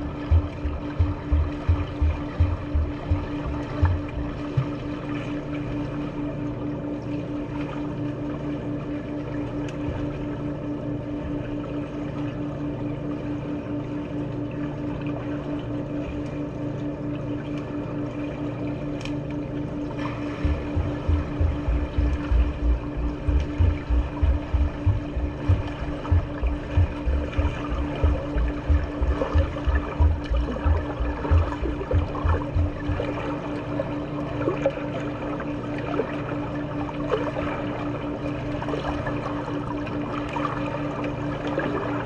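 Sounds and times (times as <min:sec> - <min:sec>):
low thumps: 0:00.0 - 0:04.8, 0:20.3 - 0:33.3
machine hum with pulsing tone: 0:00.0 - 0:42.0.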